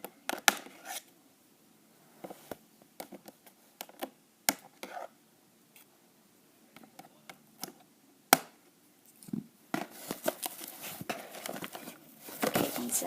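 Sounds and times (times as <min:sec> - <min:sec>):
packaging rustling: 0:09.8 - 0:13.0.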